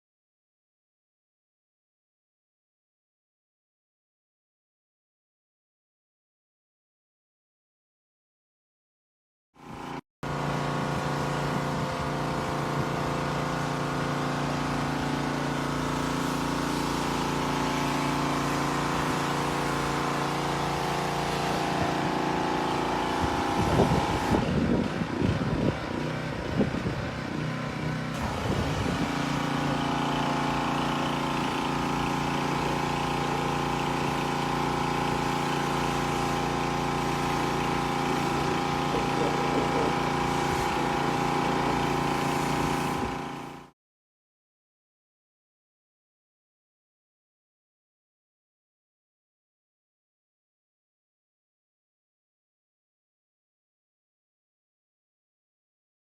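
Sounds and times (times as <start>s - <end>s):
pressure washer running: 9.6s - 43.7s.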